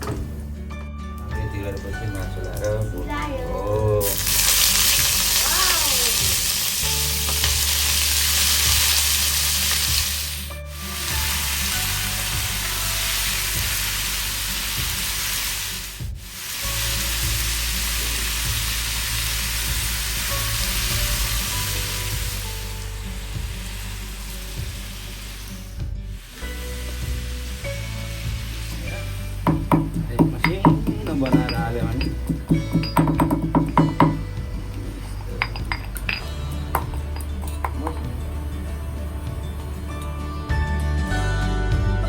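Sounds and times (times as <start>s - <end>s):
chicken sizzling in hot oil: 4.0s - 32.5s.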